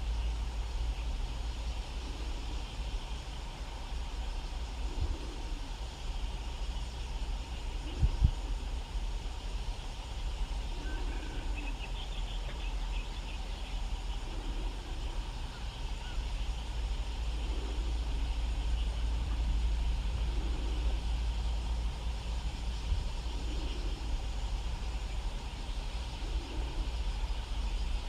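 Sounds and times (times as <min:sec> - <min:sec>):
low outdoor rumble: 0:00.0 - 0:28.0
faint bird chirps: 0:09.8 - 0:21.8.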